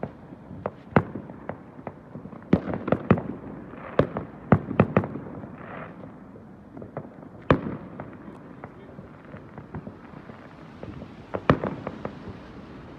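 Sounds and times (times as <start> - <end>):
fireworks exploding: 0.0 - 12.9
firework hiss: 8.6 - 12.9.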